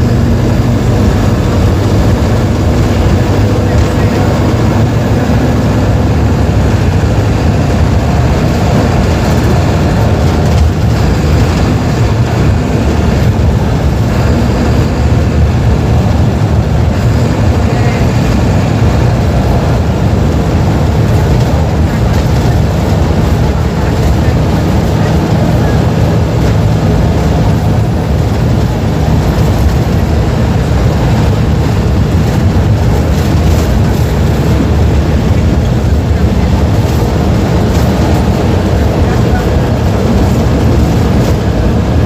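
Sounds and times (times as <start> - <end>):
bus diesel engine droning: 0.0 - 42.0.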